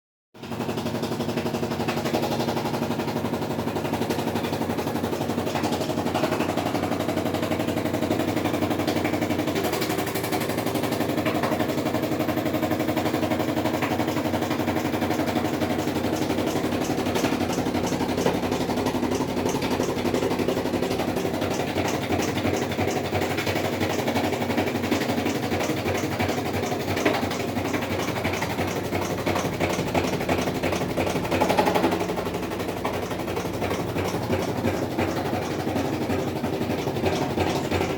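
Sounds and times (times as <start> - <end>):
washing machine hum: 0.4 - 37.9
washing machine drain rattling: 1.2 - 37.9.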